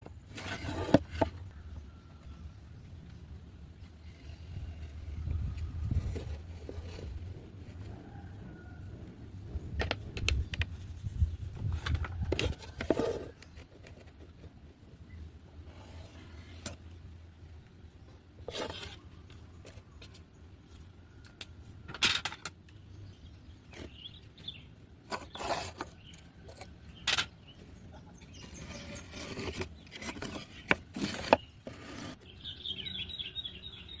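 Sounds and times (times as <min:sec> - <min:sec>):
scraping and knocking on wood: 0:00.2 - 0:01.7, 0:04.0 - 0:14.6, 0:18.4 - 0:20.3, 0:23.7 - 0:27.4, 0:28.3 - 0:32.3
birds chirping: 0:22.7 - 0:34.0.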